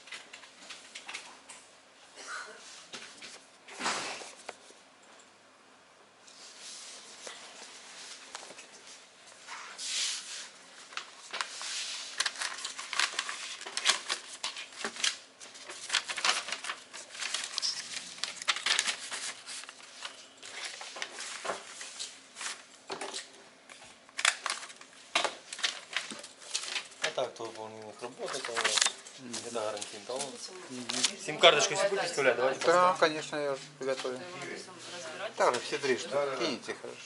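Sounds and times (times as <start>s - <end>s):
crinkling and rustling: 10.4s - 32.9s.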